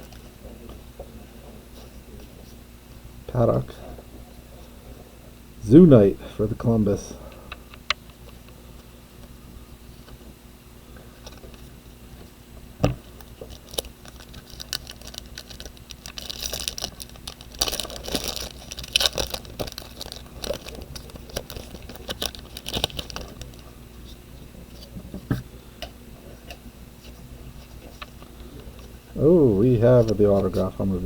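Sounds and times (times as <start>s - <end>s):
crinkly packaging rustling: 13.1s - 25.0s, 29.6s - 30.8s.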